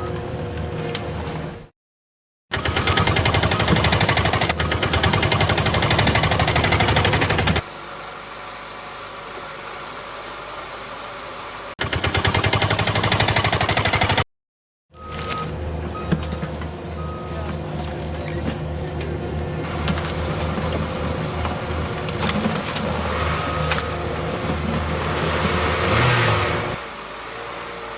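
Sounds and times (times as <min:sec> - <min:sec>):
heavy engine running with rattling pulse: 0:02.5 - 0:07.7, 0:11.8 - 0:14.2, 0:15.0 - 0:26.1.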